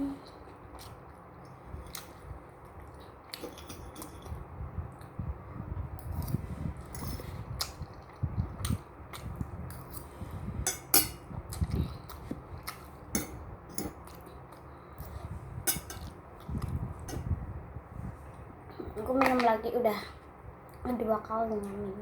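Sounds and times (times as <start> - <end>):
utensils clinking against bowl: 10.7 - 11.2, 15.7 - 16.1.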